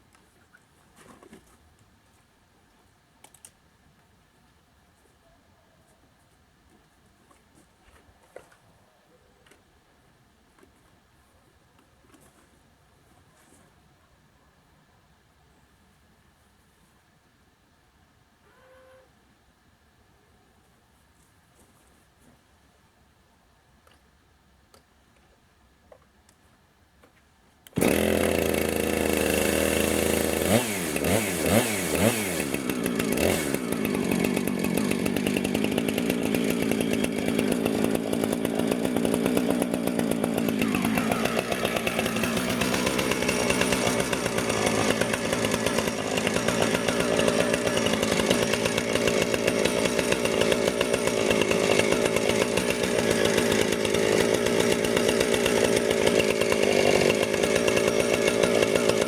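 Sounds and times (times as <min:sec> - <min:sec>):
chainsaw ripping a log: 0:27.8 - 0:59.0.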